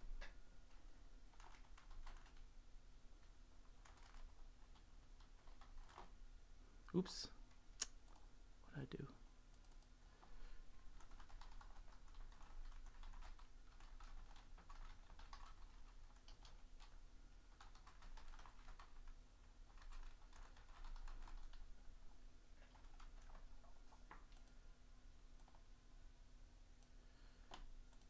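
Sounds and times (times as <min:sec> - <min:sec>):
faint steady hum: 0:00.0 - 0:28.0
computer keyboard typing: 0:01.3 - 0:02.5, 0:03.6 - 0:06.2, 0:07.5 - 0:08.3, 0:09.5 - 0:09.9, 0:10.8 - 0:21.8, 0:22.6 - 0:24.6, 0:25.3 - 0:25.7, 0:26.8 - 0:28.0.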